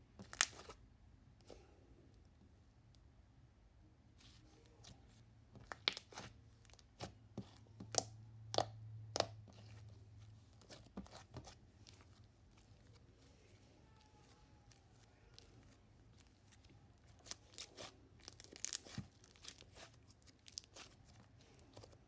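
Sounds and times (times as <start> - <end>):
slime popping and crackling: 5.6 - 6.2, 17.1 - 21.0.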